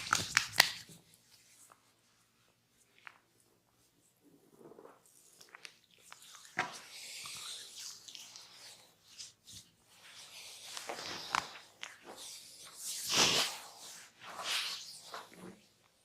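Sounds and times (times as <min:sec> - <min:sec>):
hands rubbing skin: 0:00.0 - 0:02.0, 0:05.1 - 0:15.4.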